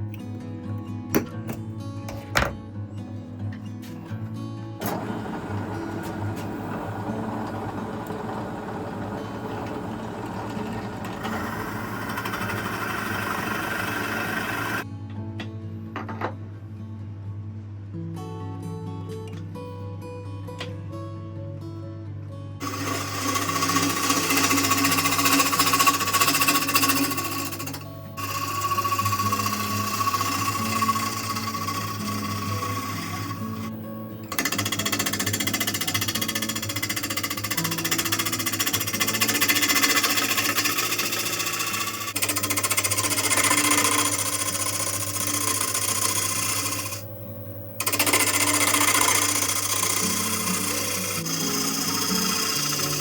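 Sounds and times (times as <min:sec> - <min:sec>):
wood lathe gouge rattling chatter: 0:04.8 - 0:14.8, 0:22.6 - 0:53.0
guitar music: 0:30.8 - 0:34.3.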